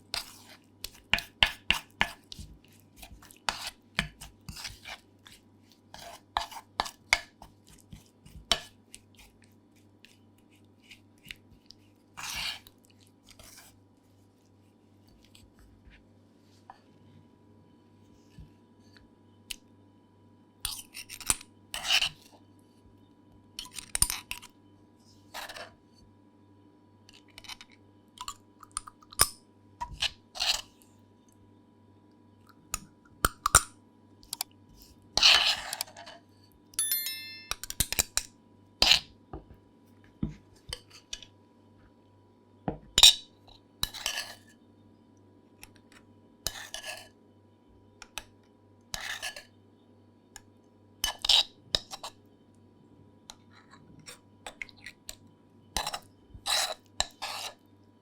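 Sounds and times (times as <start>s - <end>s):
faint steady hum: 0.0s - 58.0s
dishes and utensils clinking: 36.8s - 38.0s.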